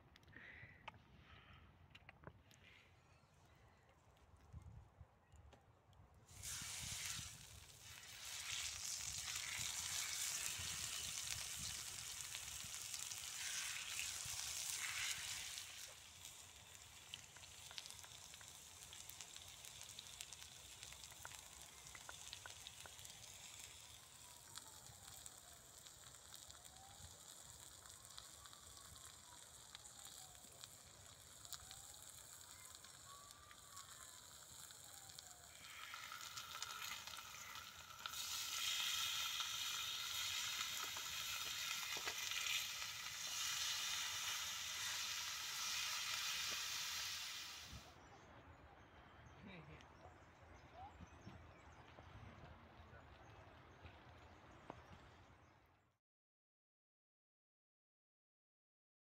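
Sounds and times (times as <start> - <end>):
food sizzling on a griddle: 6.3 - 47.9.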